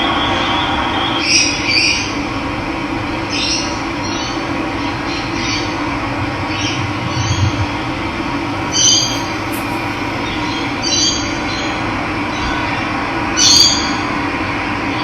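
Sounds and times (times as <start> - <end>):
running water: 8.6 - 11.0
birds calling: 8.6 - 11.2.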